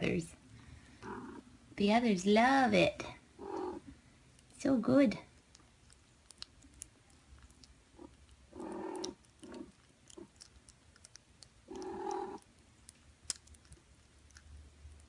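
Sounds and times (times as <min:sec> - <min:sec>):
cat purring: 0:00.9 - 0:01.5, 0:03.0 - 0:04.0, 0:05.6 - 0:12.6
kittens licking clicks: 0:05.4 - 0:15.0.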